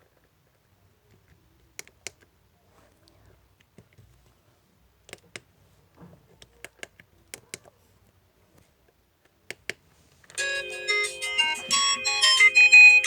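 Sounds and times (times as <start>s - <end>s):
phone alarm electronic melody: 10.4s - 13.0s.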